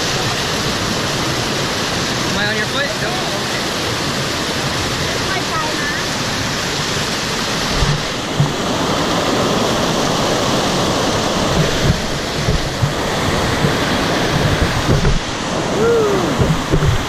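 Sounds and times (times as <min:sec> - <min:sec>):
waterfall rushing: 0:00.0 - 0:17.0
brief low thumps: 0:07.7 - 0:08.6, 0:11.5 - 0:15.3, 0:16.3 - 0:17.0.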